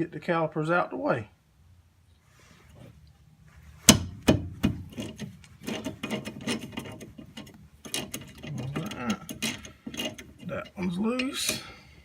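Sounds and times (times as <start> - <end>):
wrench tapping on bolt: 3.9 - 10.4.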